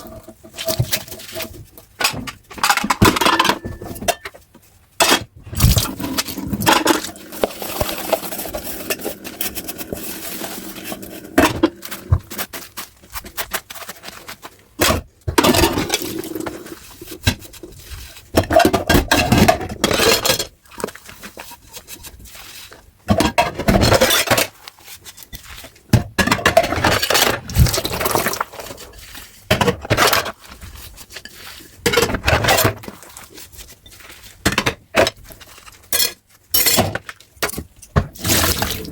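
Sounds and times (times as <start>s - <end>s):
dishes clinking and scraping: 0.0s - 12.5s, 33.9s - 37.6s.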